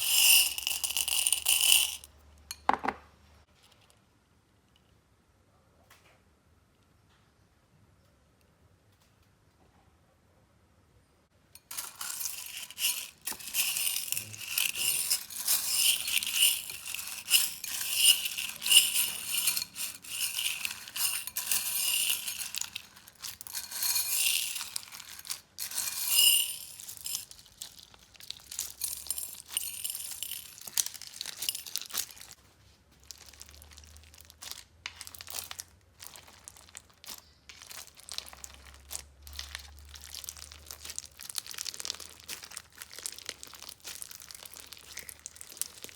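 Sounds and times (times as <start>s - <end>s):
slime crackling and crunching: 33.0s - 45.9s.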